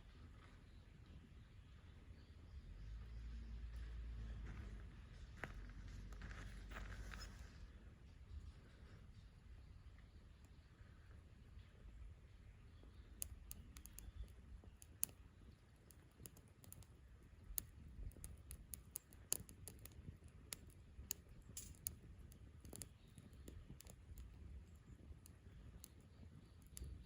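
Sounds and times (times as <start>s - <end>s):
sharp snaps of fire: 12.8s - 27.0s
wood fire crackling: 12.8s - 27.0s.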